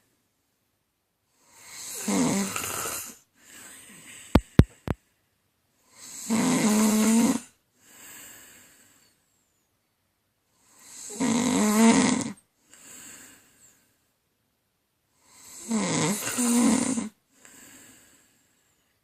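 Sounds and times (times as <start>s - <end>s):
woman snoring: 1.5s - 3.2s, 6.0s - 7.5s, 10.7s - 12.4s, 15.3s - 17.2s.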